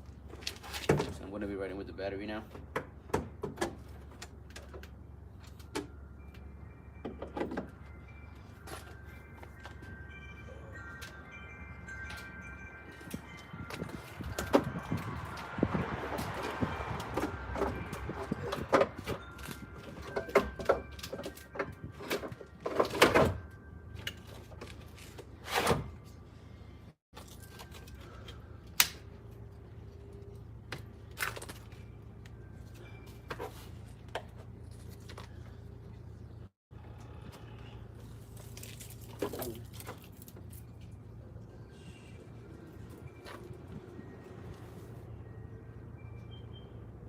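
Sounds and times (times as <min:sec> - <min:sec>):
car warning chime: 0:31.9 - 0:33.9, 0:41.7 - 0:47.0.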